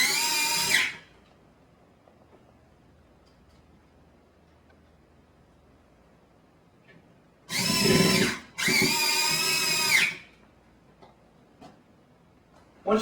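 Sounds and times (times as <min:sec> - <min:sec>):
power drill whining: 0:00.0 - 0:01.0, 0:07.5 - 0:10.3.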